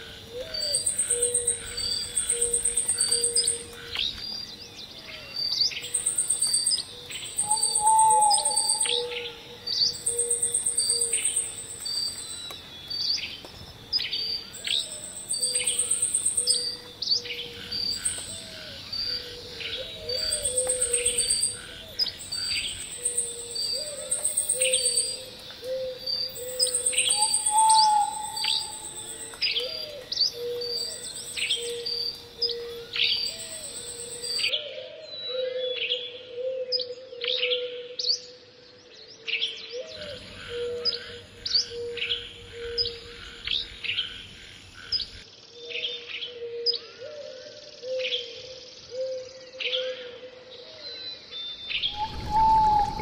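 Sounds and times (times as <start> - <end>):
birds chirping and calling: 0.0 - 37.6, 39.7 - 50.0, 50.8 - 53.0
pulsing insect-like trill: 9.8 - 12.3.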